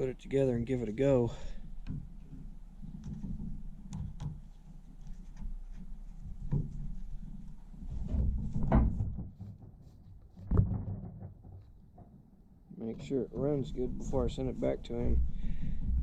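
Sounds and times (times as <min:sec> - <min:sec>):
loud thump: 0:10.5 - 0:11.4.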